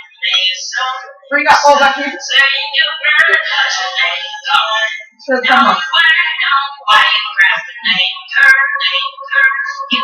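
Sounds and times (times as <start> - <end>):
high-pitched voice singing: 0.0 - 10.0
music: 0.0 - 10.0.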